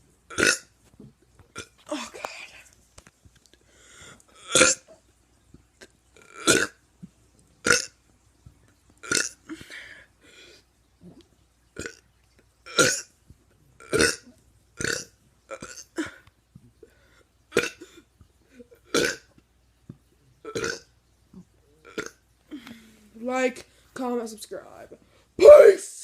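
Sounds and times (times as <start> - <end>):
person burping: 0.3 - 0.7, 4.4 - 5.0, 6.2 - 6.8, 7.7 - 7.9, 9.0 - 9.9, 11.8 - 12.0, 12.7 - 13.1, 13.9 - 16.2, 17.5 - 19.3, 20.4 - 20.9, 21.8 - 22.8.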